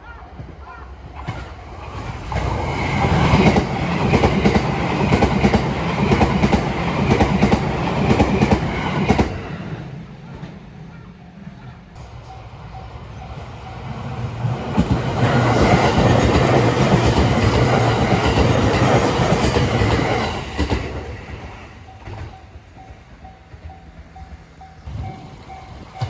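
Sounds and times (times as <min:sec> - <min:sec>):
train wheels clattering: 0:01.2 - 0:10.6, 0:13.4 - 0:26.0
crossing warning bell ringing: 0:11.0 - 0:14.4, 0:21.3 - 0:26.0.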